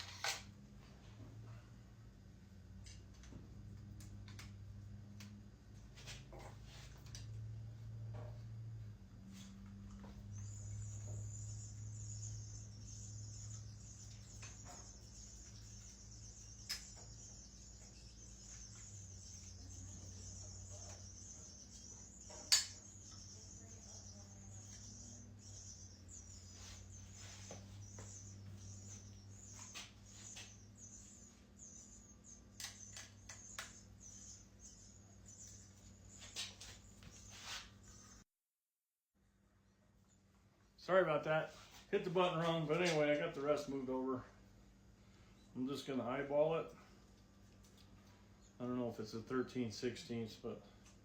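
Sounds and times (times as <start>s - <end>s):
faint low hum: 0.0s - 38.2s.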